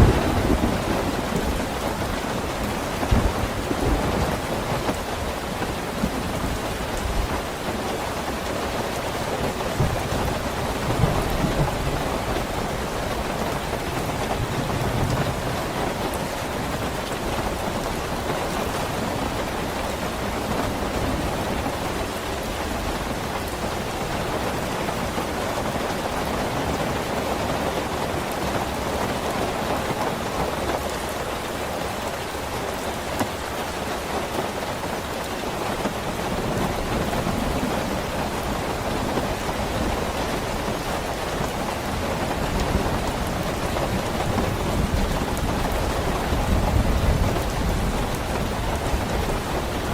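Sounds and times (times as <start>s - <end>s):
distant thunder rumbles: 0.0s - 7.4s
heavy rain hiss: 0.0s - 49.9s.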